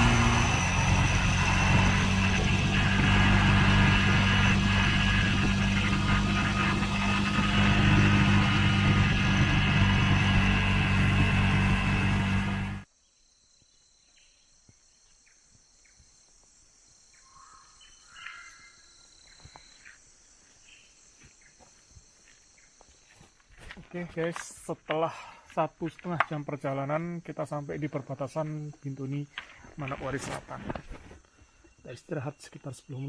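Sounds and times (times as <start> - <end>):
motorcycle engine running: 0.0 - 12.8
road noise: 0.0 - 12.8
insects chirring: 12.9 - 33.0.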